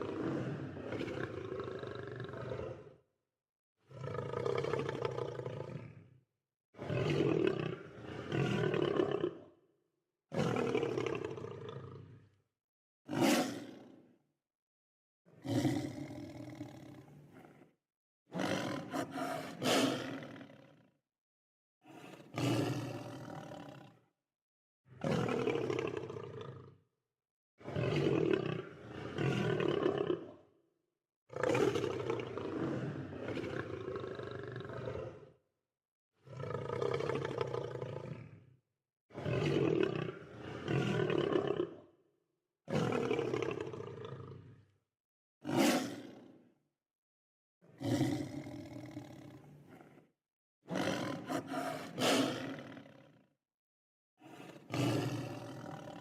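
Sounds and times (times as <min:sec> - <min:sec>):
lion roaring: 0:03.9 - 0:06.0, 0:18.3 - 0:20.5, 0:36.2 - 0:38.4, 0:45.4 - 0:46.2, 0:47.7 - 0:50.0, 0:50.7 - 0:53.2, 0:54.2 - 0:56.0.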